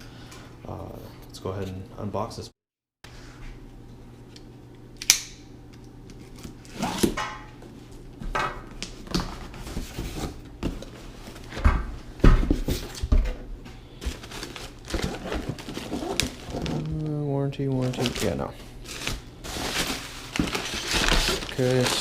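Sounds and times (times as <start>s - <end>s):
cardboard scraping and rustling: 9.2s - 11.6s, 14.0s - 17.0s, 17.8s - 22.0s.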